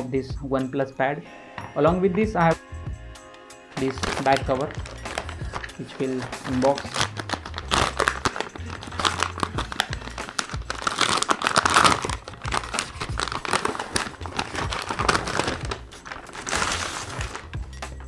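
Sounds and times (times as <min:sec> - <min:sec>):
packaging crinkling: 0:03.8 - 0:18.0.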